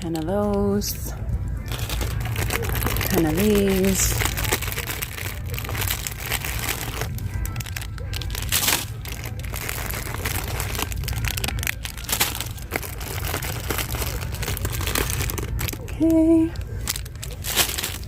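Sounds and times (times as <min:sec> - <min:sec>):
plastic packaging crinkling: 0:01.6 - 0:18.0
small crackles and clicks: 0:01.6 - 0:18.0.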